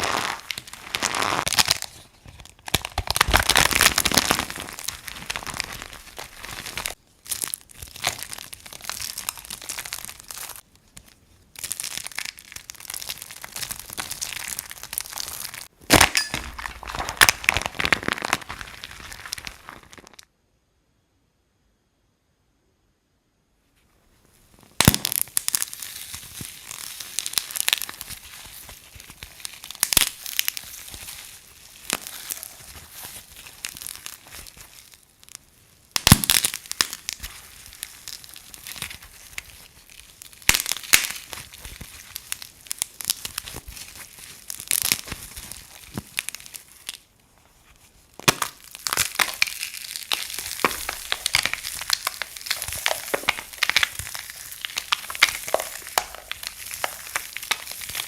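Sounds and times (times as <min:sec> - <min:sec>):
dry soap crushing and crunching: 0:00.0 - 0:20.2, 0:24.6 - 0:58.0.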